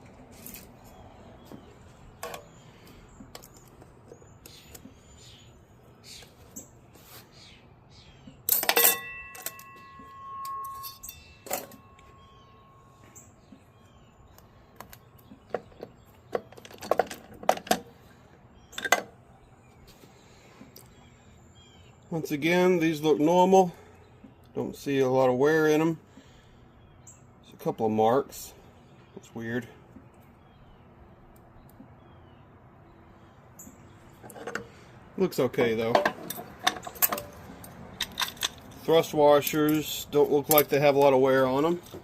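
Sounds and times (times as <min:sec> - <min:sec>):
metal gear parts clinking: 0:08.5 - 0:12.3
metal part ringing: 0:08.5 - 0:13.4.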